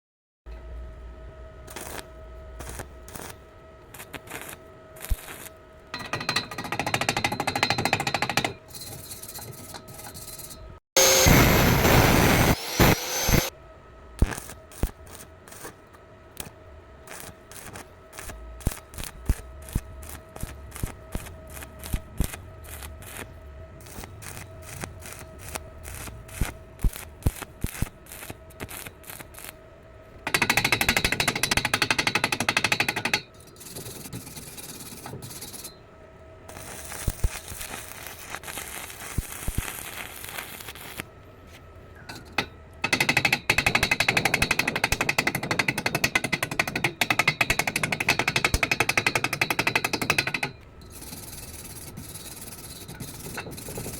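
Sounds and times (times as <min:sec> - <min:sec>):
faint steady whine: 0:00.5 - 0:53.9
welding arc crackling: 0:01.7 - 0:05.6, 0:11.0 - 0:13.5, 0:14.2 - 0:15.8, 0:16.4 - 0:29.6, 0:36.5 - 0:41.1.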